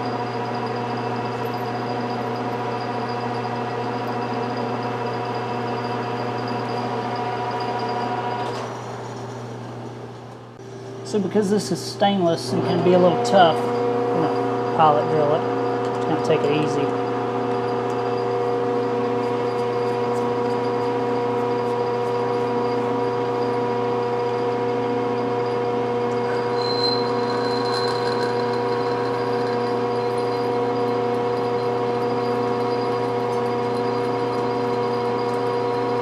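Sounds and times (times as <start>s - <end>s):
high squeal from drill cut: 0.0s - 9.5s, 25.1s - 36.0s
metal lathe running: 0.0s - 9.5s, 12.4s - 36.0s.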